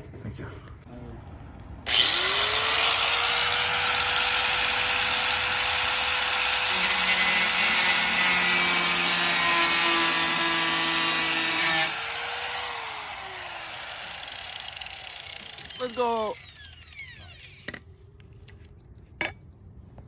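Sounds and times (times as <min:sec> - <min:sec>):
cordless drill running: 0:01.9 - 0:17.7.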